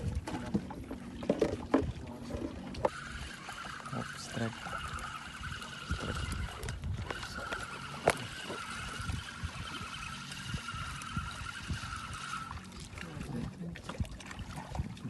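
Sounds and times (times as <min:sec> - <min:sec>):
water against boat hull: 0:00.0 - 0:15.0.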